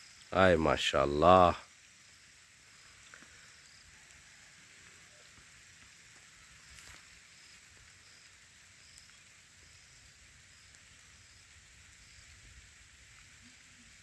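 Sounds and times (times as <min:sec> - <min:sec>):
light rain hissing: 0:00.0 - 0:14.0.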